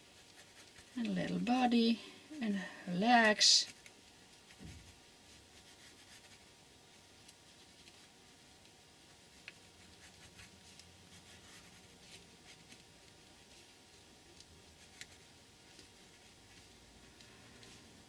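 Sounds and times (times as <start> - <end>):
pen scratching on paper: 0.1 - 1.0, 5.5 - 6.4.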